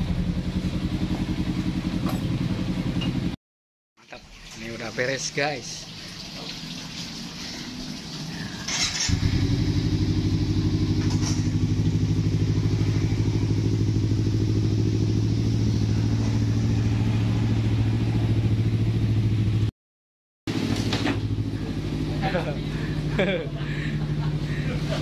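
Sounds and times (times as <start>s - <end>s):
motorcycle engine starting and idling: 0.0s - 3.4s, 8.3s - 19.7s, 20.5s - 25.0s.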